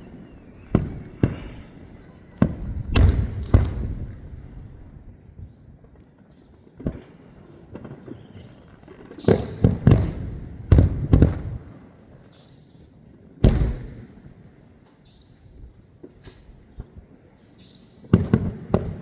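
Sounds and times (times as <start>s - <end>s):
fireworks booming: 0.0s - 5.1s, 6.8s - 11.9s, 13.4s - 14.4s, 18.0s - 19.0s.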